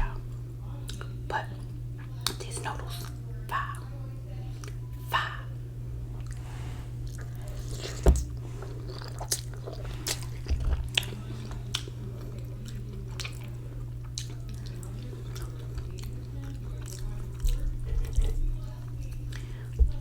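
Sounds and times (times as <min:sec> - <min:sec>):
person chewing noodles: 0:06.2 - 0:19.8.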